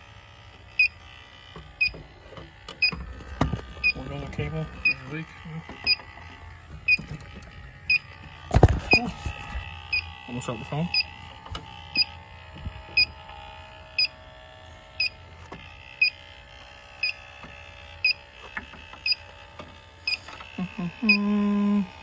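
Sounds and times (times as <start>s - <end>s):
leak detector beeping: 0.8s - 1.0s, 1.8s - 2.0s, 2.7s - 5.2s, 5.8s - 6.1s, 6.8s - 10.2s, 10.8s - 11.2s, 11.9s - 12.2s, 12.9s - 13.2s, 14.0s - 14.2s, 15.0s - 15.2s, 16.0s - 16.2s, 17.0s - 17.2s, 18.0s - 18.3s, 19.0s - 19.3s, 20.0s - 21.8s.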